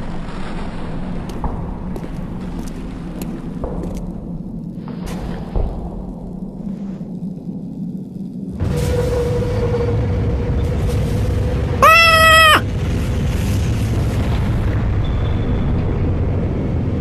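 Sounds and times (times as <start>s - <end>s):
cat-like meme sound effect: 11.8s - 12.6s.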